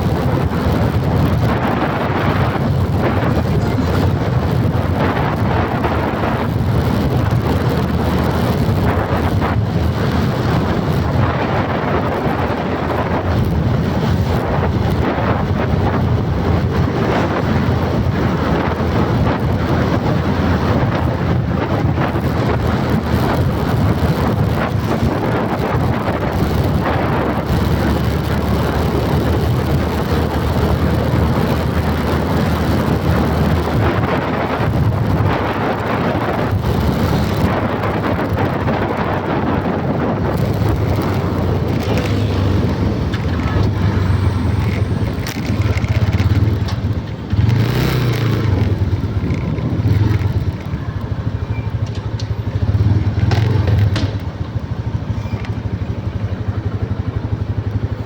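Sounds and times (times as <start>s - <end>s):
vehicle engine running: 0.0s - 58.0s
wind noise on microphone: 0.0s - 58.0s.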